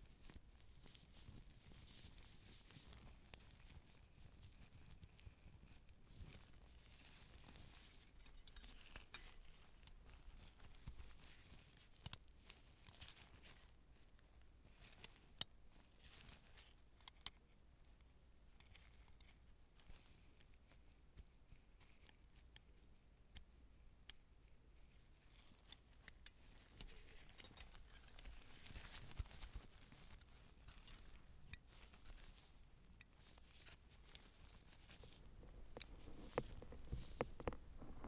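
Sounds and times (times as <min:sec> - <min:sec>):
soft crinkling rustle: 0:00.0 - 0:38.0.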